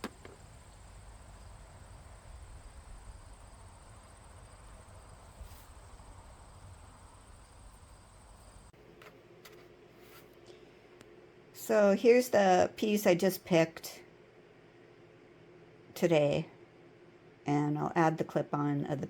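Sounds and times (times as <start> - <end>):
insects trilling: 0.0 - 8.7
low outdoor rumble: 0.0 - 8.7.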